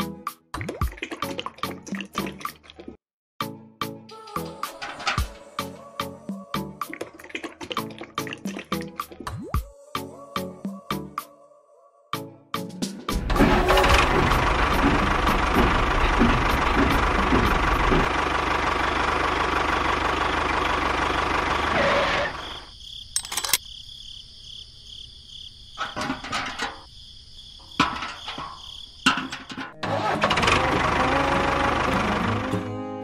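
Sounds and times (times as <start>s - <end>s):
clicks and knocks: 23.2s - 23.6s.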